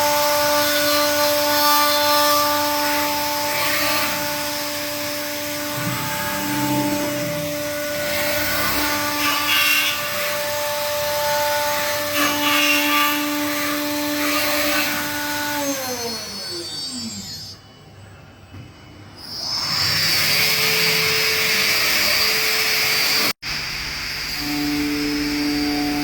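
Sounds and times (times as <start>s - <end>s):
machine high whine spinning down: 4.8s - 8.5s.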